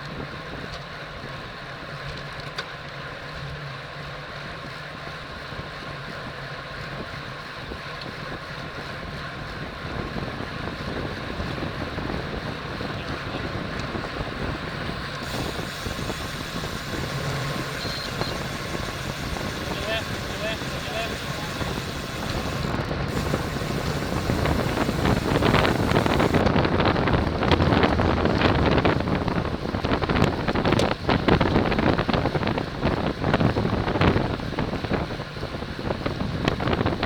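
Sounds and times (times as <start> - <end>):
bicycle tyre road noise: 0.0 - 37.0
wind on microphone: 9.5 - 37.0.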